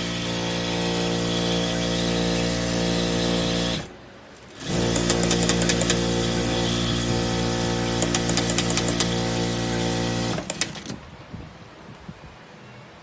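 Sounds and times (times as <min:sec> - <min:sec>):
sewing machine humming: 0:00.0 - 0:11.0
quick ticking: 0:04.6 - 0:06.1, 0:07.8 - 0:09.4.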